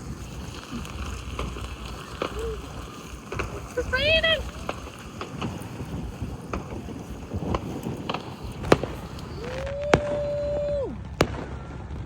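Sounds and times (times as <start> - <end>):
fireworks popping: 0.0 - 12.0.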